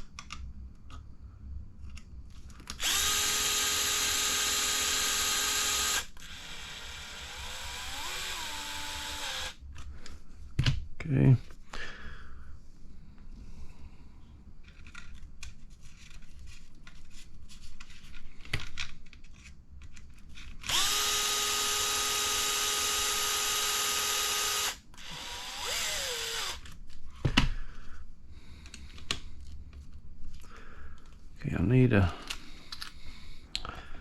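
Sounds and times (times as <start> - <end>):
electric screwdriver whirring: 2.7 - 9.6, 20.6 - 26.6.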